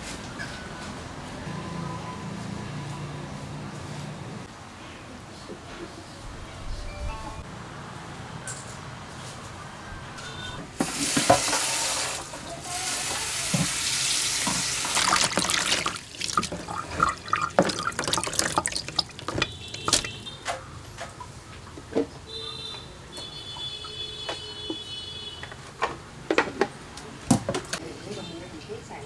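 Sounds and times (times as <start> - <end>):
water running from a tap: 10.8 - 20.3.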